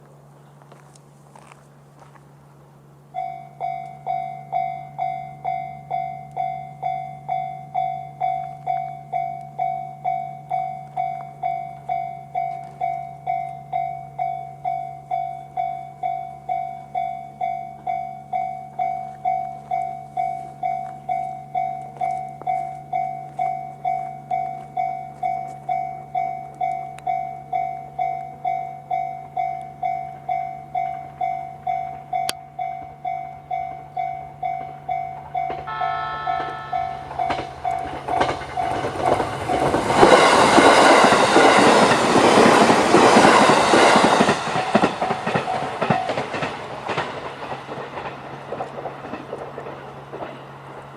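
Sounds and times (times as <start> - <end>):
level crossing bell dinging: 3.2 - 38.9.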